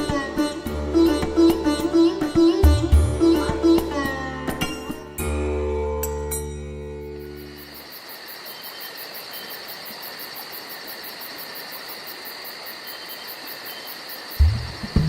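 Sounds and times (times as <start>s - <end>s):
sitar-like string note: 0.0s - 7.4s
insect chirping: 5.0s - 15.0s.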